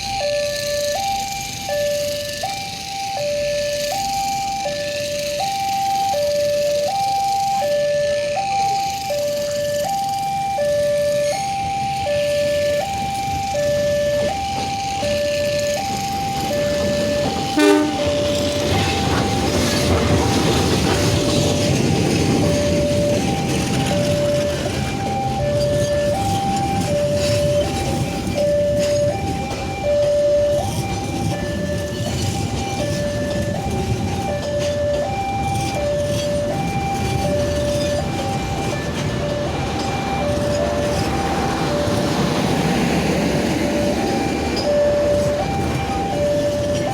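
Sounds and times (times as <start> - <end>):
level-crossing two-tone alarm: 0.0 - 46.9
short horn beep: 17.6 - 18.1.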